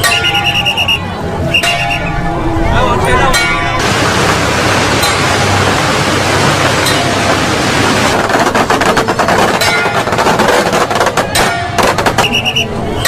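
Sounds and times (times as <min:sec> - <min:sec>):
high electronic beeping: 0:00.0 - 0:03.8
steady rushing noise: 0:00.0 - 0:13.0
firecrackers banging: 0:03.1 - 0:13.0.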